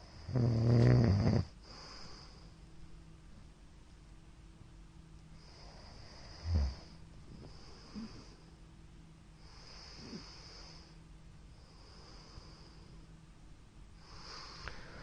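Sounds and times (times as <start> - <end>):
man snoring: 0.1 - 1.6, 5.5 - 6.9.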